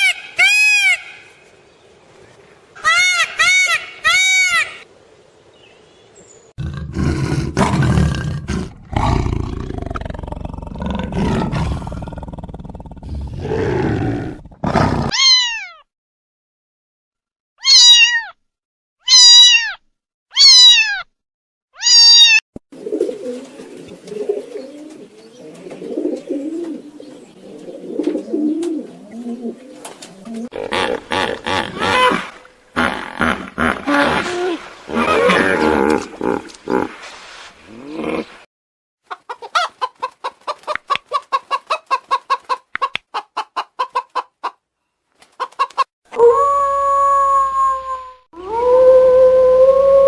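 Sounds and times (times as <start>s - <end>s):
rough low animal call: 30.4s - 37.0s.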